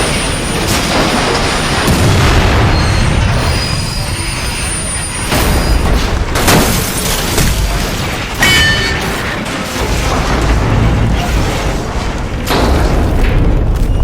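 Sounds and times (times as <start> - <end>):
heavy rumbling and grinding: 0.0 - 14.0
train crash with metallic ring: 8.4 - 9.5.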